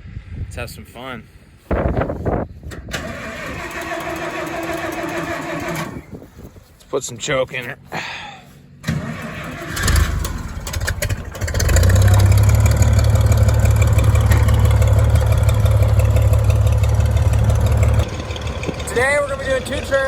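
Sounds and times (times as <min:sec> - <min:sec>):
tractor engine cranking and starting: 0:02.6 - 0:06.4, 0:08.8 - 0:20.0.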